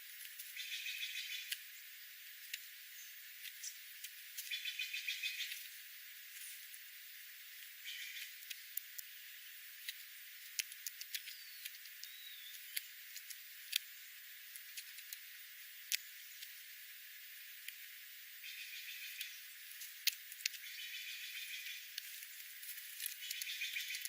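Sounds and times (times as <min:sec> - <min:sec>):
faint hiss: 0:00.0 - 0:24.0
small birds ticking: 0:00.0 - 0:24.0
high bird chirps: 0:04.5 - 0:05.6, 0:11.2 - 0:12.9, 0:23.2 - 0:24.0.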